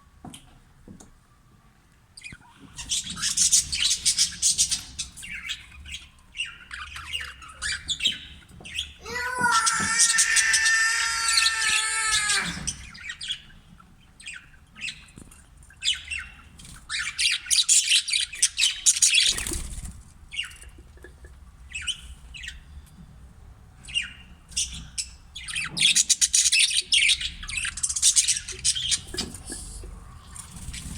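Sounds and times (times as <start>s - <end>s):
budgerigars chirping and chattering: 2.2s - 9.0s, 11.9s - 23.1s, 23.8s - 30.9s
held pitched bird call: 9.0s - 13.2s.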